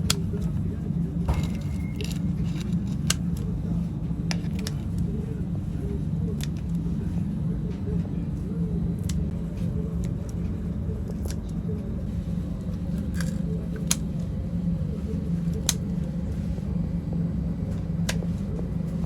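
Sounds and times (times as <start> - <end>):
low machine hum: 0.0 - 19.0.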